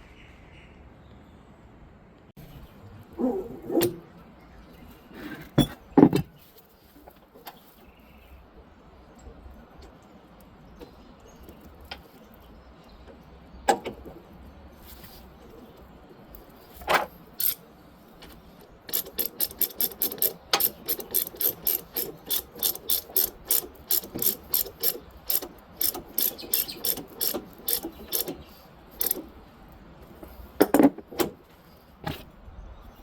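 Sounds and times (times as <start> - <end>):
metal parts knocking: 16.8 - 17.6, 18.9 - 29.3
socket ratchet clicking: 17.4 - 17.6, 18.9 - 29.3.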